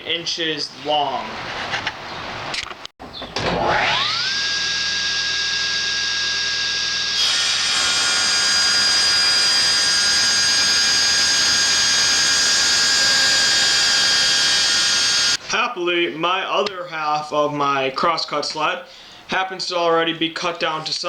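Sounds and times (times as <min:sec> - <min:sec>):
electric saw whining: 0:03.4 - 0:15.4
saw cutting through plywood: 0:03.4 - 0:15.4.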